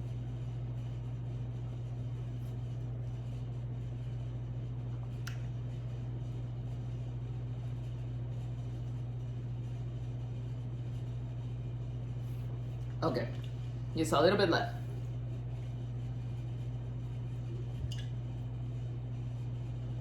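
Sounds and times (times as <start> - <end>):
low background hum: 0.0 - 20.0
faint click: 5.2 - 5.4.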